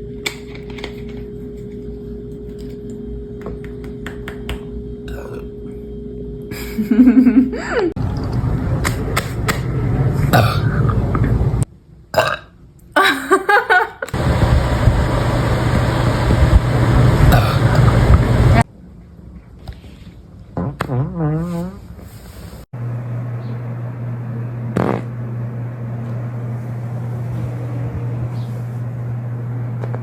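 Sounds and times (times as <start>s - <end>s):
woman burping: 5.1s - 5.5s, 10.3s - 10.8s, 12.2s - 13.4s, 17.3s - 17.8s.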